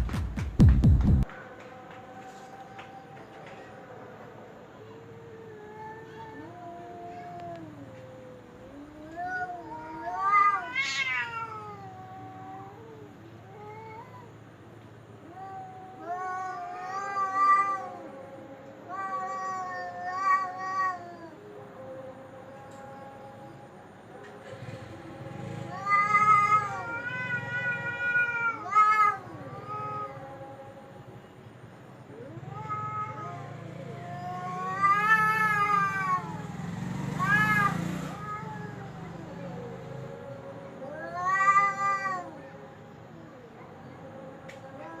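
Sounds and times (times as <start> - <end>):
cat yowling: 4.8 - 14.4, 15.2 - 23.7, 25.4 - 30.9, 32.0 - 40.2, 40.8 - 45.0.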